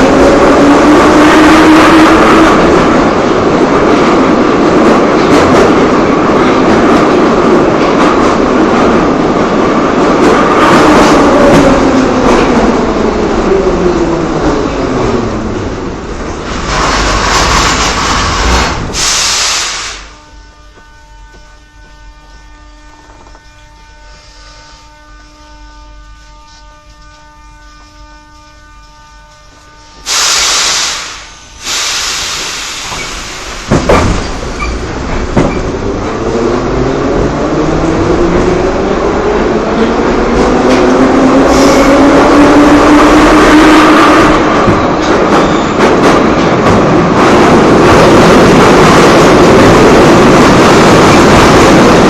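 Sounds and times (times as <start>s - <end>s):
metro train rumbling: 0.0s - 52.0s
loud hiss: 16.7s - 20.2s, 30.1s - 33.7s.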